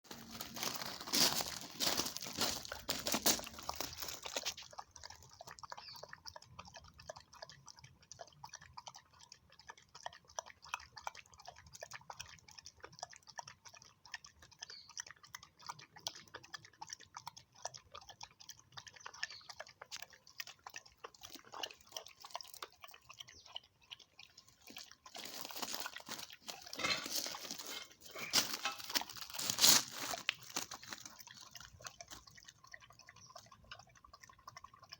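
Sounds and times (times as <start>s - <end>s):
dog crunching food: 0.1s - 5.7s, 19.6s - 34.9s.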